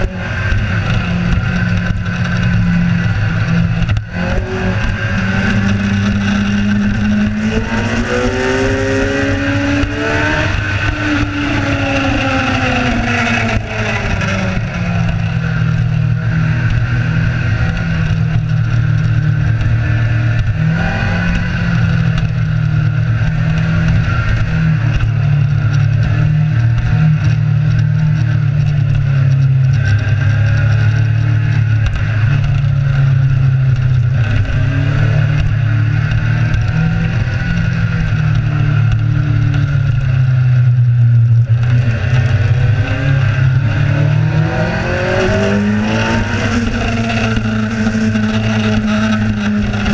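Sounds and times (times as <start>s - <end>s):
motorcycle engine running: 0.0s - 49.9s.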